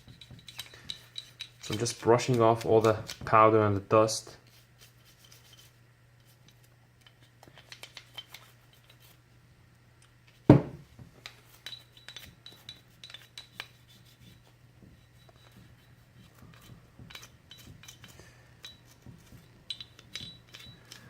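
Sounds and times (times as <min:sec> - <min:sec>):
toothbrush scrubbing metal: 0:00.0 - 0:03.2, 0:04.4 - 0:09.2, 0:11.2 - 0:21.0
steady low hum: 0:00.0 - 0:21.0
small metallic clicks and clinks: 0:00.1 - 0:03.2, 0:11.2 - 0:13.8, 0:16.3 - 0:21.0.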